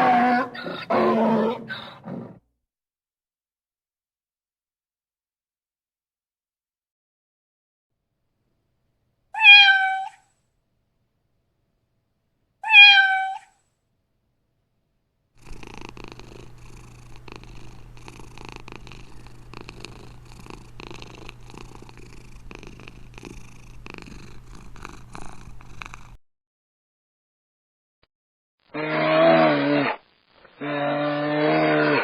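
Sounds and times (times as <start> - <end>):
cat meowing: 9.4 - 10.2, 12.6 - 13.5
cat purring: 15.4 - 26.2.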